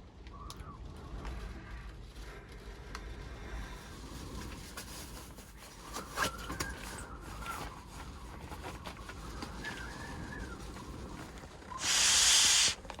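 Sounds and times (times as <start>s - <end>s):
storm wind buffeting van: 7.0s - 11.8s.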